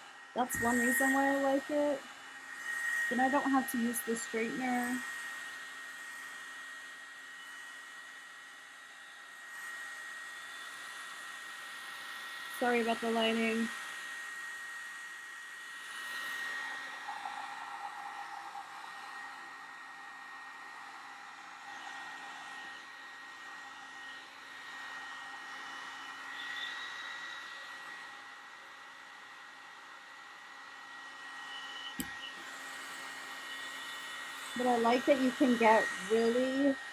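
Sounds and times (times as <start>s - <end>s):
hair dryer brush blowing: 34.2s - 36.9s.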